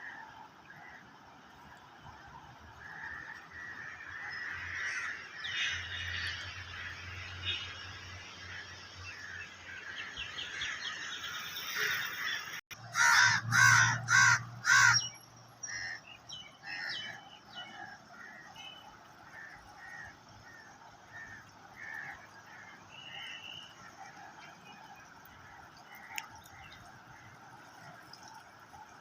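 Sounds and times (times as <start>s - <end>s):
crow cawing: 12.9s - 15.0s.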